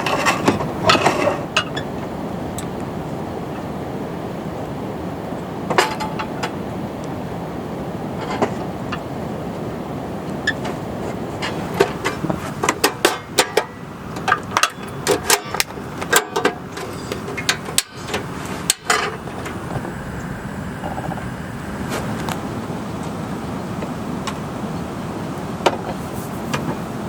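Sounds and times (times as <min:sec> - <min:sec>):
rain hiss: 0:16.6 - 0:24.7.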